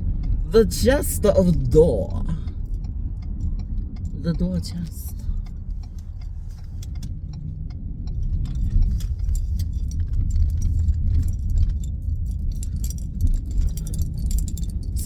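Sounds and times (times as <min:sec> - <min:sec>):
car road noise rumble: 0:00.0 - 0:15.0
light clinking rattles: 0:05.1 - 0:15.0.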